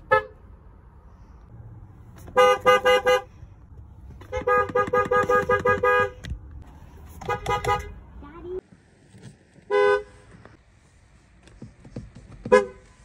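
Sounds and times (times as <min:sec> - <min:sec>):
car horn beeping: 0:00.0 - 0:00.4, 0:02.2 - 0:03.3, 0:04.2 - 0:06.3, 0:07.2 - 0:08.0, 0:09.7 - 0:10.3, 0:12.5 - 0:13.0.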